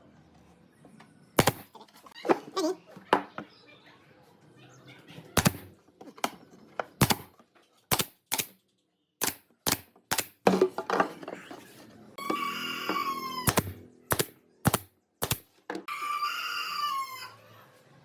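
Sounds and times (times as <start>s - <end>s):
woodworking knocks and clicks: 7.0s - 7.3s.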